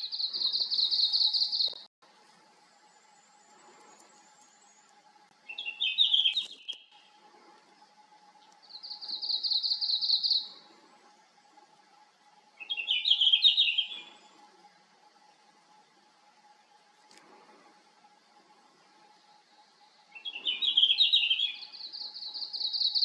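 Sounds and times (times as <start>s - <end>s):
bird warbled song: 0.0s - 1.9s, 2.8s - 7.2s, 8.4s - 10.8s, 12.6s - 14.4s, 19.0s - 23.0s
faint steady hum: 0.0s - 23.0s.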